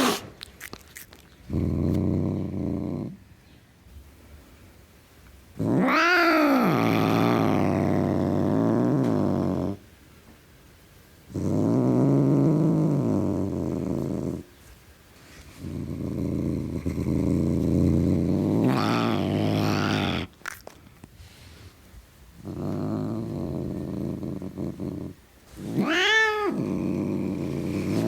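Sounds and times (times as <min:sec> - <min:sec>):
cat growling: 0:01.4 - 0:03.2, 0:05.5 - 0:09.8, 0:11.3 - 0:14.5, 0:15.6 - 0:20.6, 0:22.4 - 0:28.0.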